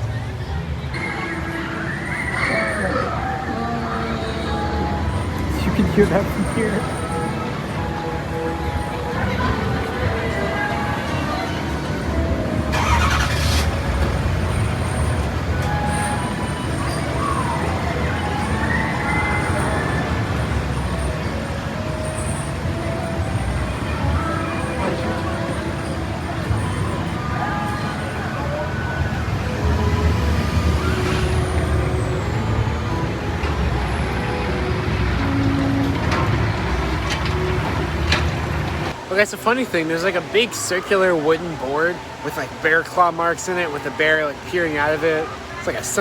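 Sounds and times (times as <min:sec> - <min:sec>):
low rumble of heavy machinery: 0:03.1 - 0:39.1.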